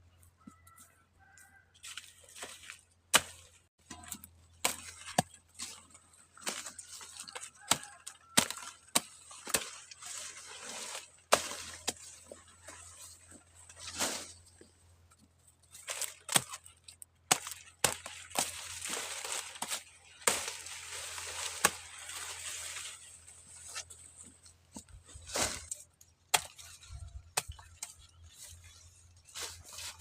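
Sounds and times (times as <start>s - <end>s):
corn stalks snapping: 3.2s - 14.3s, 15.7s - 23.8s
dry leaves rustling and tearing: 4.1s - 14.4s, 15.7s - 24.0s.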